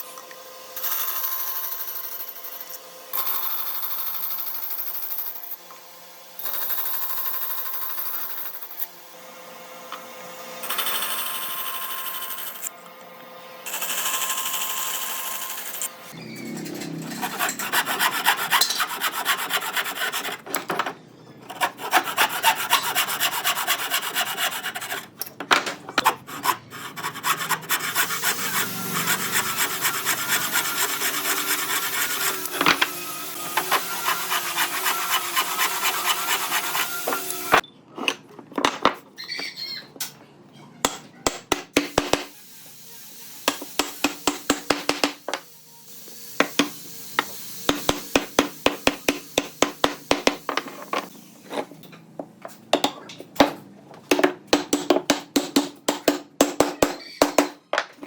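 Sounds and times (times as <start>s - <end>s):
wood being sanded by hand: 17.1s - 20.5s, 21.5s - 25.2s, 26.0s - 37.6s.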